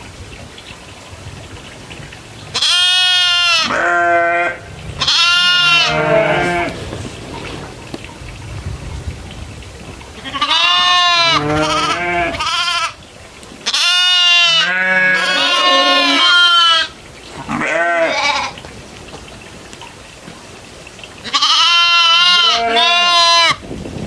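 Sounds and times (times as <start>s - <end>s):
goats bleating: 2.5s - 7.8s, 10.2s - 13.0s, 13.6s - 18.6s, 21.2s - 23.6s.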